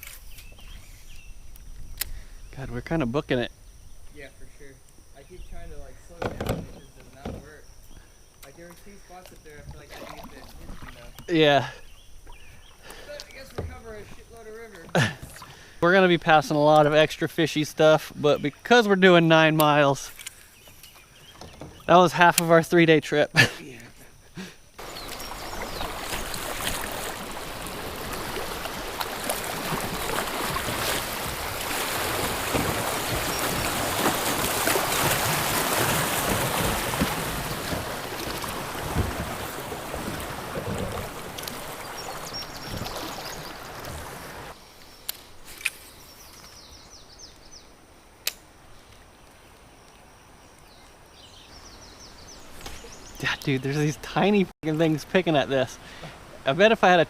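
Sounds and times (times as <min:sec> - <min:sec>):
river rapids rushing: 0:24.8 - 0:44.5.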